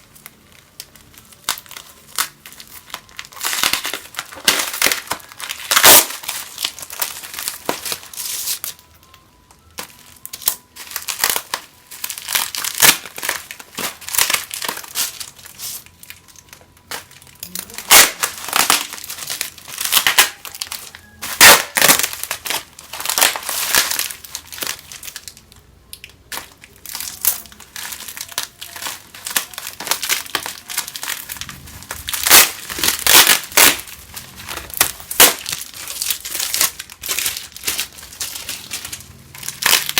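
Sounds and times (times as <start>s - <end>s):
packaging crinkling: 0.0s - 39.9s.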